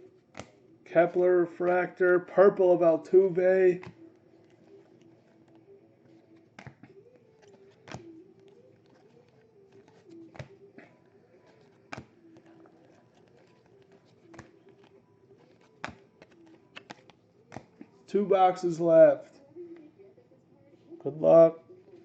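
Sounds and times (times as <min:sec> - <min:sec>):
cards clicking and tapping: 0:00.2 - 0:00.6, 0:02.8 - 0:18.2.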